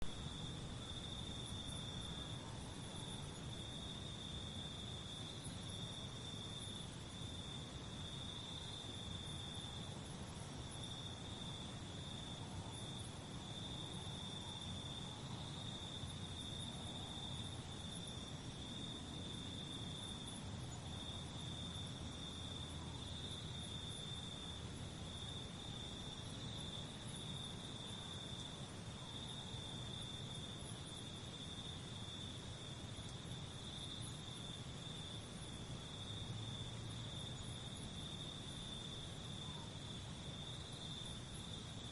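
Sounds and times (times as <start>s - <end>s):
crickets chirping: 0.0s - 41.9s.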